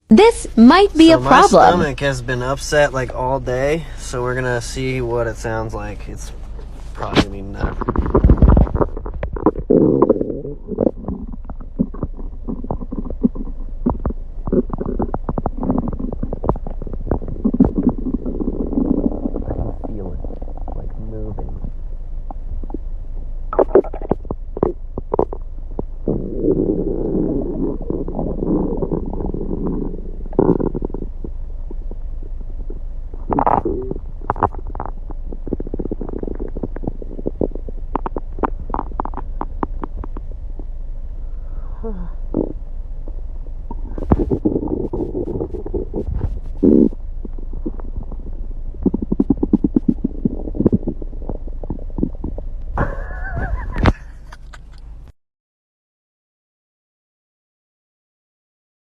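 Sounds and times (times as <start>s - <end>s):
stomach gurgling and rumbling: 6.6s - 22.9s, 23.5s - 40.8s, 41.5s - 54.3s.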